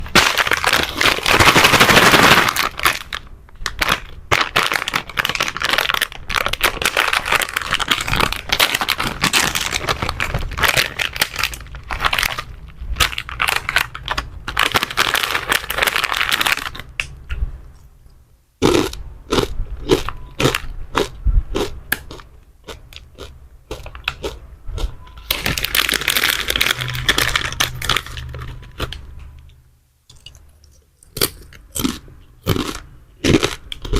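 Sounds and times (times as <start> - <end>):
plastic wrappers crinkling: 0.0 - 17.1, 25.2 - 29.2.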